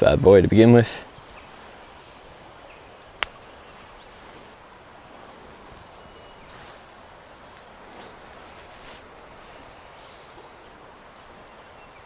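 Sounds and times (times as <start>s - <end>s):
stream water rushing: 0.0s - 12.0s
faint high chirps: 4.5s - 6.6s.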